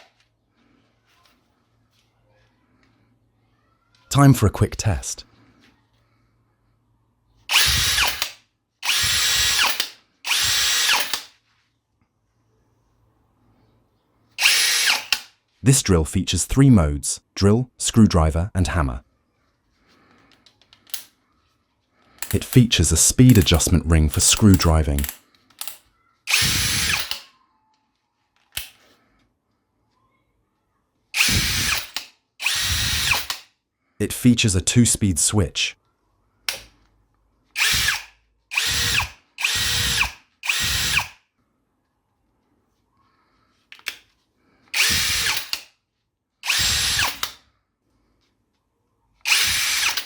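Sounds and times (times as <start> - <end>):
impact drill motor whine: 7.5 - 11.2, 14.4 - 15.2, 26.3 - 27.2, 31.2 - 33.3, 37.6 - 41.2, 44.8 - 45.6, 46.4 - 47.3, 49.3 - 50.0.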